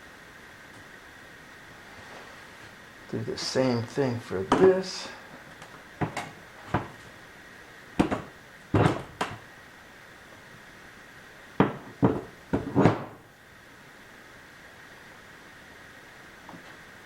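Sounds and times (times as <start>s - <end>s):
parts knocking and clunking: 5.6s - 7.1s, 8.0s - 9.4s, 11.6s - 13.2s.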